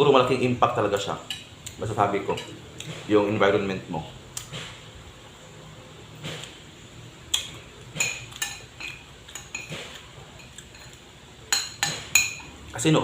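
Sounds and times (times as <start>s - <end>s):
cutlery clinking on plate: 7.4s - 12.5s.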